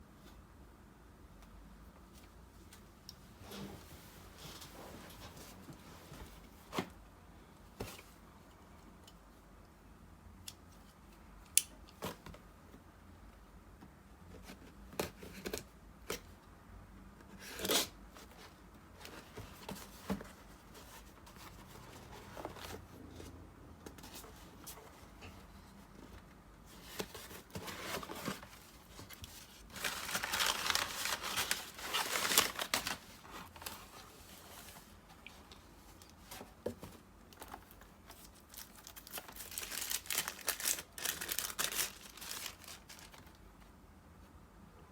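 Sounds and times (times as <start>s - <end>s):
packaging tearing and crinkling: 29.2s - 33.0s, 38.4s - 43.4s.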